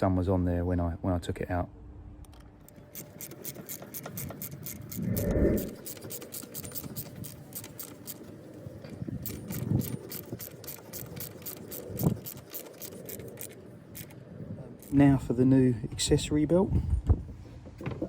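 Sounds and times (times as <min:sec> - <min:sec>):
ratchet wrench clicking: 0:02.7 - 0:08.3, 0:09.2 - 0:14.2, 0:14.8 - 0:15.1.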